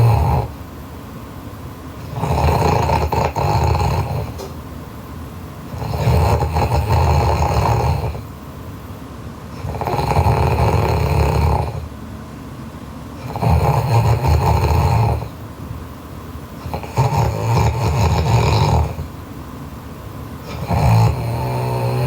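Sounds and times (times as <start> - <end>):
girl snoring loudly: 0.0 - 0.6, 2.0 - 4.5, 5.7 - 8.3, 9.6 - 11.9, 13.2 - 15.3, 16.6 - 19.1, 20.5 - 22.0.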